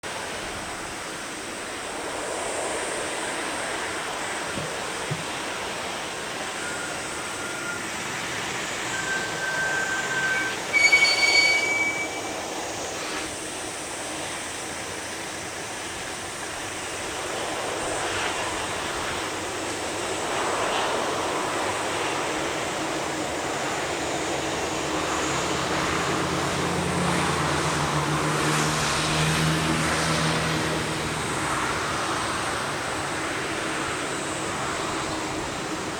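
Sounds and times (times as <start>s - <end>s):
distant jet engines rumbling: 0.1s - 35.9s
high whistle-like notes: 6.5s - 13.3s.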